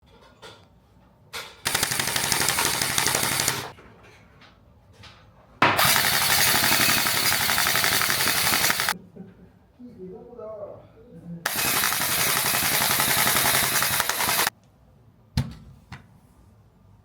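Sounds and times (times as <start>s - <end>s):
gel blaster firing rapidly: 1.7s - 3.7s, 5.7s - 9.0s, 11.5s - 14.5s.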